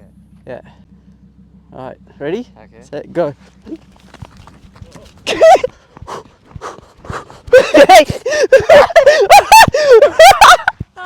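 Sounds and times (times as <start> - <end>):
man gasping for breath: 5.7 - 9.9.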